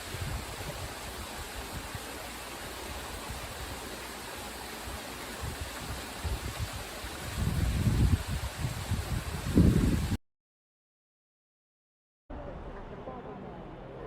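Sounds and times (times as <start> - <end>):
waterfall rushing: 0.0 - 9.7.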